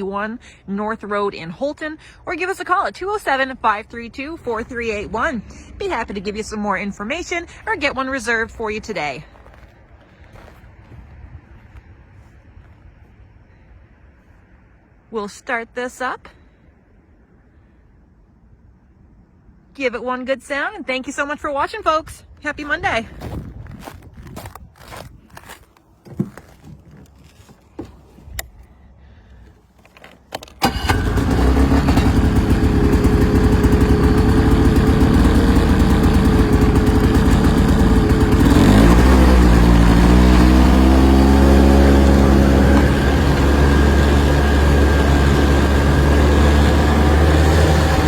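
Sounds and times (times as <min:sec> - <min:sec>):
snowmobile engine running: 0:04.0 - 0:07.0, 0:30.6 - 0:48.0.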